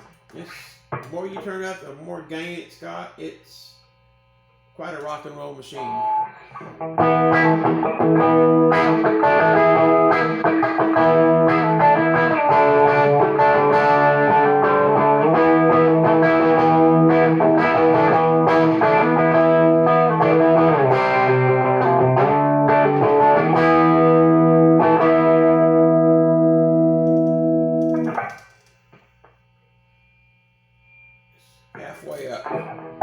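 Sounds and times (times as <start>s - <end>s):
overdriven electric guitar: 5.9s - 28.8s, 32.0s - 33.0s.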